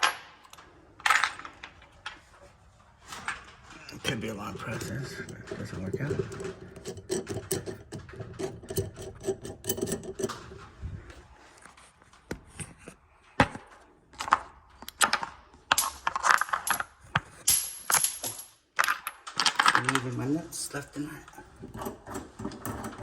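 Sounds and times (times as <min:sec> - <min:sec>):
metal nuts and washers clinking: 0:03.2 - 0:10.7, 0:21.3 - 0:23.0
metallic jingling: 0:03.9 - 0:10.6.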